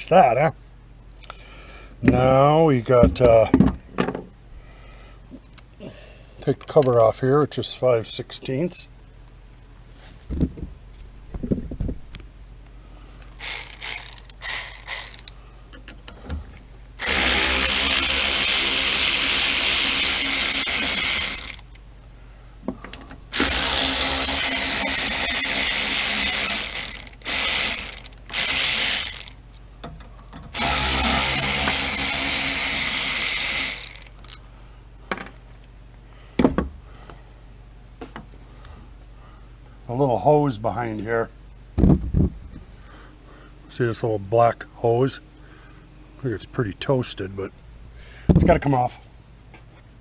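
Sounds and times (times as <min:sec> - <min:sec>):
power driver spinning: 0:13.4 - 0:15.4, 0:17.0 - 0:21.8, 0:23.3 - 0:29.4, 0:30.5 - 0:34.2.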